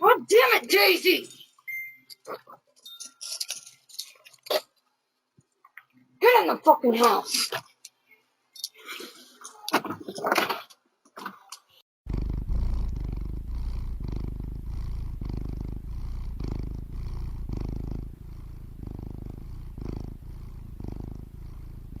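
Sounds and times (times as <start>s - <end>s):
cat purring: 12.1s - 22.0s.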